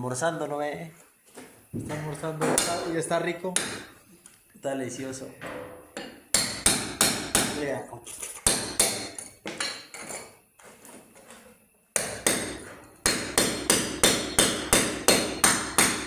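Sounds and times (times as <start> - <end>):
ringing hammer strikes: 12.0 - 16.0.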